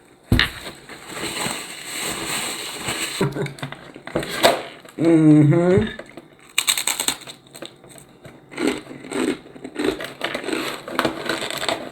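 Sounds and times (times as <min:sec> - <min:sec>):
closed-mouth hum: 0:04.6 - 0:06.2
crunchy chewing: 0:06.4 - 0:11.9.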